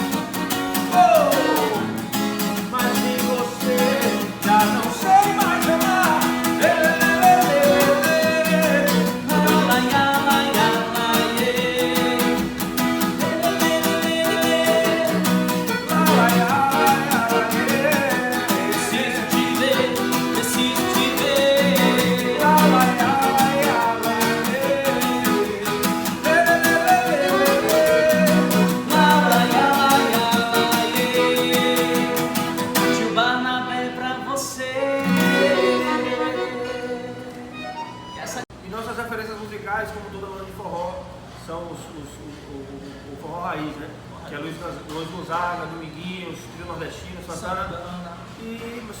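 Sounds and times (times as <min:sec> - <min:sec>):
live band playing: 0:00.0 - 0:02.8, 0:12.1 - 0:33.0
guitar: 0:00.0 - 0:38.6
person singing: 0:00.8 - 0:02.0, 0:02.7 - 0:12.6, 0:13.2 - 0:37.8.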